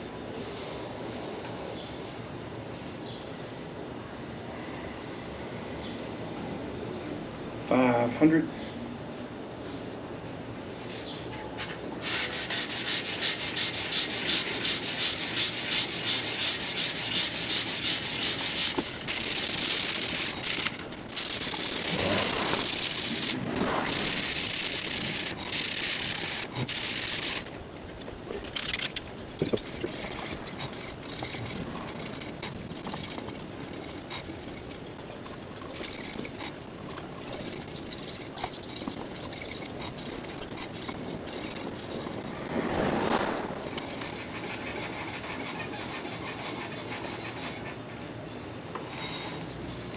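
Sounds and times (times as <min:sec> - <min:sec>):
sandpaper rubbing on metal: 0:12.0 - 0:27.4, 0:43.9 - 0:47.7.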